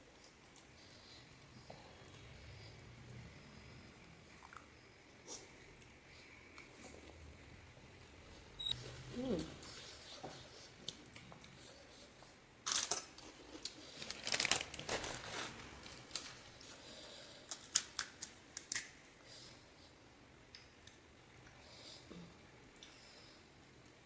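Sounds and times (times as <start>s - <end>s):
crisp shells cracking and crunching: 12.6s - 16.4s, 17.5s - 19.0s.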